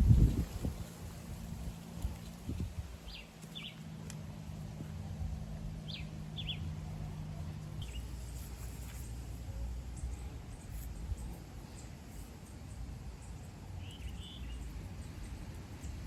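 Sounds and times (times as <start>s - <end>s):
small bird chirping: 9.9s - 16.0s.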